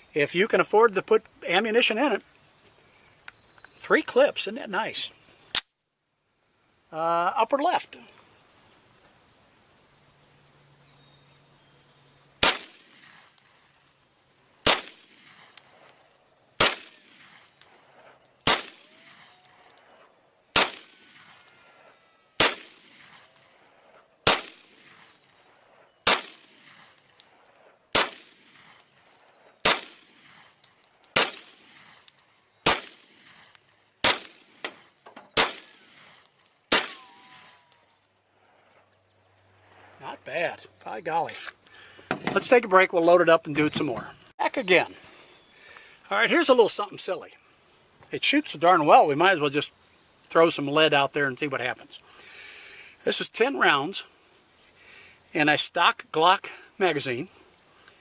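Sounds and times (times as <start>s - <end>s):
pistol shots: 12.4s - 13.3s, 14.6s - 15.6s, 16.6s - 17.5s, 18.4s - 19.4s, 20.5s - 21.4s, 22.4s - 23.3s, 24.2s - 25.2s, 26.0s - 26.9s, 27.9s - 28.8s, 29.6s - 30.4s, 31.2s - 32.0s, 32.6s - 37.6s.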